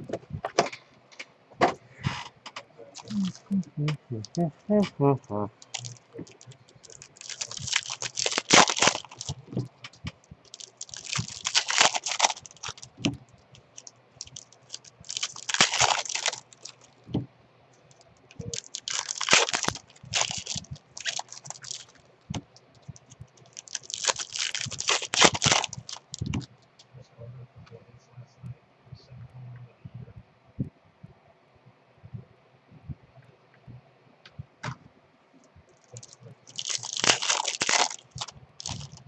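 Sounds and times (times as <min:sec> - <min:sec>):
foil wrappers tearing and crinkling: 0:02.9 - 0:03.5, 0:05.6 - 0:17.0, 0:17.9 - 0:26.5, 0:35.9 - 0:39.0.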